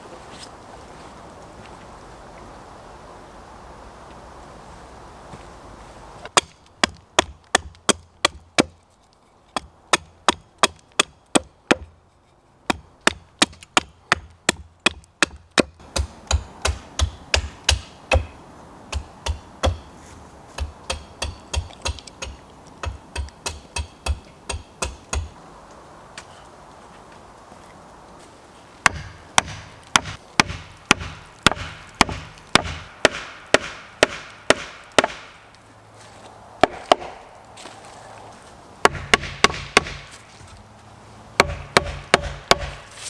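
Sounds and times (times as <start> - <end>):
axe chopping wood: 6.3 - 8.8, 9.6 - 12.0, 12.7 - 19.9, 20.5 - 25.4, 28.8 - 35.4, 36.6 - 37.2, 38.8 - 40.2, 41.4 - 43.0.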